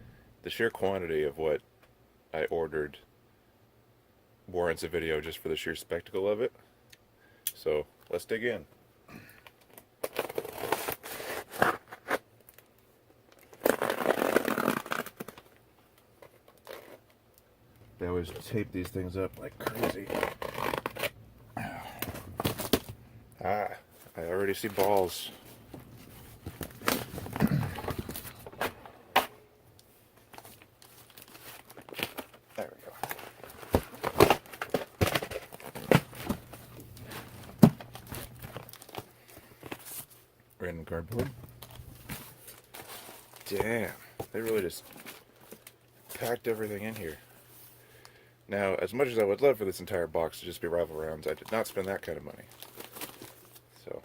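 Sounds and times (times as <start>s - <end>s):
packaging and cardboard rustling: 9.7s - 12.2s, 18.2s - 23.0s, 23.9s - 40.3s, 41.0s - 47.8s, 51.2s - 53.6s
packing tape ripping off box: 9.7s - 12.2s, 13.4s - 15.6s, 19.6s - 21.2s, 22.0s - 23.0s, 30.3s - 32.4s, 33.0s - 39.1s, 52.5s - 53.6s
faint low hum: 15.2s - 54.0s.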